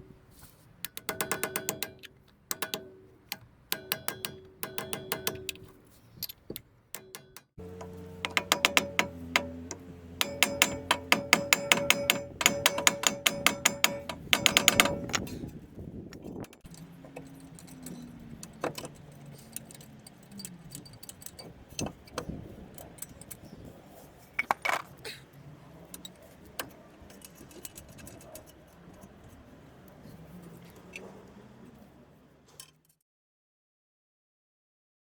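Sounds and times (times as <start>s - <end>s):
metallic clinks and taps: 0.9s - 15.4s
faint wavering hum: 7.6s - 15.8s.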